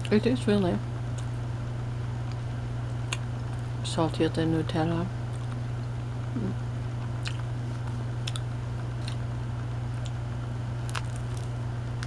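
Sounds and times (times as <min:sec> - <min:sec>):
steady low hum: 0:00.0 - 0:12.0
mouth clicks while chewing: 0:08.2 - 0:09.2.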